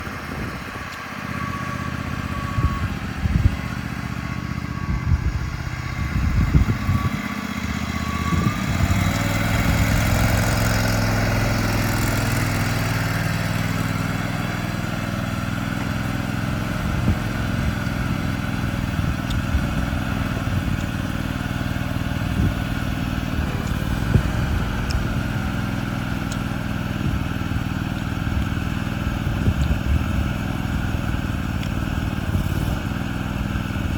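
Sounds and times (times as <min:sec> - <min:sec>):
excavator engine running: 0:00.0 - 0:33.9.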